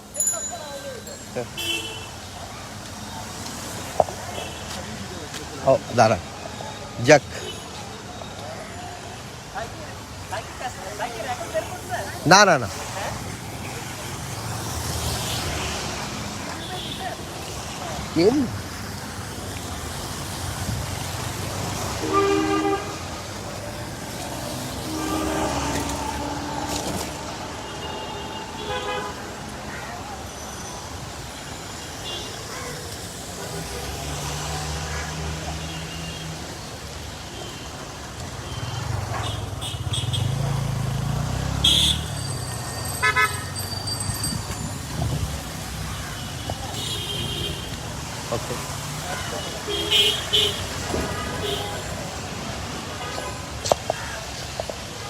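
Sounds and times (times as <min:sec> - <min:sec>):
street background noise: 0:00.0 - 0:55.0
vehicle horn blare: 0:22.0 - 0:23.1, 0:24.8 - 0:26.9, 0:27.6 - 0:29.3, 0:41.6 - 0:42.1, 0:43.0 - 0:43.5
passing vehicle engine rumble: 0:23.0 - 0:28.6, 0:38.8 - 0:43.0.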